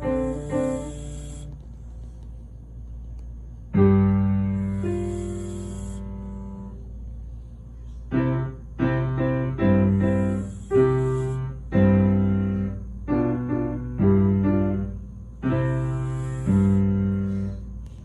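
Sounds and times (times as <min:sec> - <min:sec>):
slow piano chords: 0:00.0 - 0:01.7, 0:03.5 - 0:17.9
person snoring softly: 0:00.0 - 0:02.2, 0:04.5 - 0:06.8, 0:09.7 - 0:11.6, 0:15.5 - 0:17.7.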